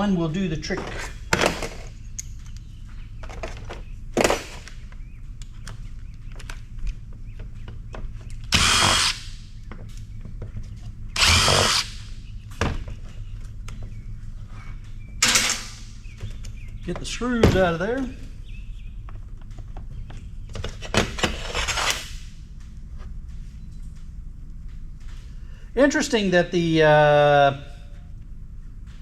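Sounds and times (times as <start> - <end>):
electric screwdriver whirring: 8.5 - 9.2, 11.2 - 12.0
handling knocks: 14.7 - 18.4.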